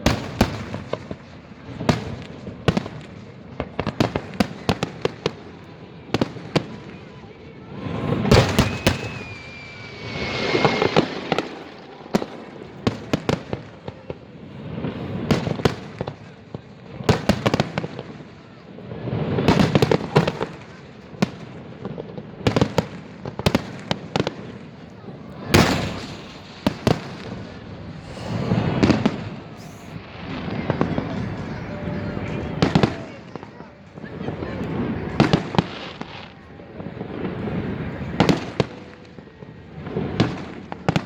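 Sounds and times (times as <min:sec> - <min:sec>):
fireworks bangs and crackles: 0:00.0 - 0:41.0
falling firework whistle: 0:07.6 - 0:15.8, 0:25.4 - 0:33.6
rolling booms: 0:07.9 - 0:14.0, 0:25.4 - 0:33.5.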